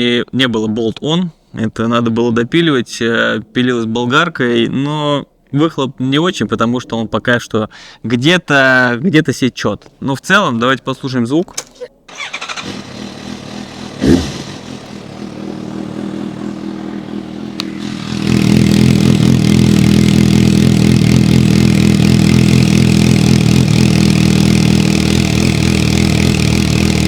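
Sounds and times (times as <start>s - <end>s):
motorcycle engine idling: 12.1s - 27.0s
loud motorcycle exhaust note: 12.2s - 27.0s.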